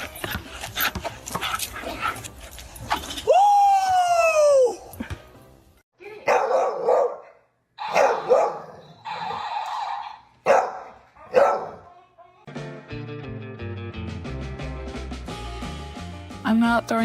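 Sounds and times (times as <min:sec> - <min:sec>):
dog barking: 0:06.2 - 0:08.9, 0:10.4 - 0:11.9.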